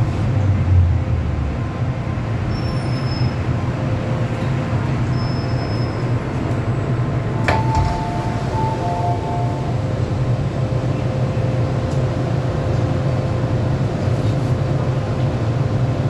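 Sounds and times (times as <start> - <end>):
train wheels rumbling: 6.4 - 10.7
steady high tones: 7.3 - 10.7.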